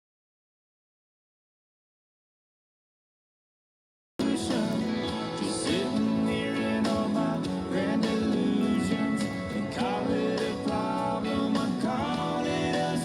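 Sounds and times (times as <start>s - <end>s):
acoustic guitar country music: 4.2s - 13.0s
person singing: 4.2s - 13.0s.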